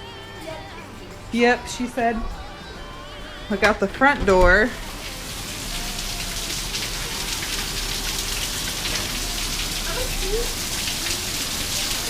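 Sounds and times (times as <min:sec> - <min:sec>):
heavy rain pouring: 0:03.2 - 0:12.0
raindrops splashing: 0:03.3 - 0:12.0.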